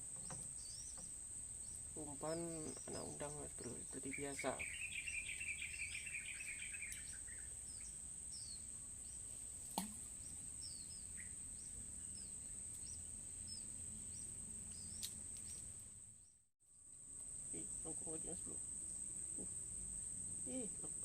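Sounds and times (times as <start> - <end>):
high insect drone: 0.0 - 16.0, 16.7 - 21.0
short bird chirps: 4.6 - 8.6.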